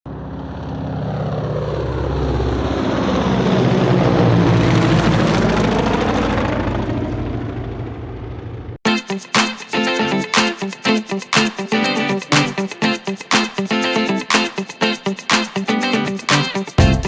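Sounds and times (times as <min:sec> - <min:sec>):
helicopter flying past: 0:00.1 - 0:08.8.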